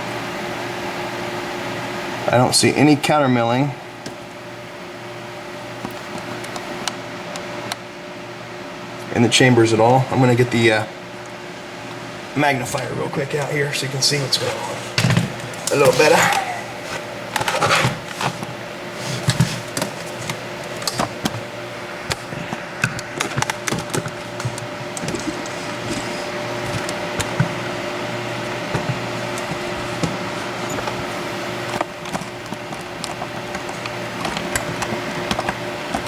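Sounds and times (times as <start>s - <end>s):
steady background hum: 0.0s - 36.0s
tools clicking and knocking: 31.7s - 36.0s.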